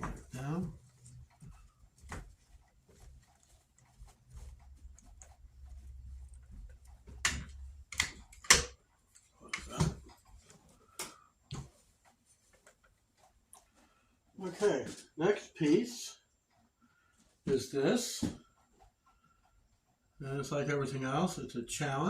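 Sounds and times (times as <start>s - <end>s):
sharp knocks and clicks: 3.8s - 11.8s.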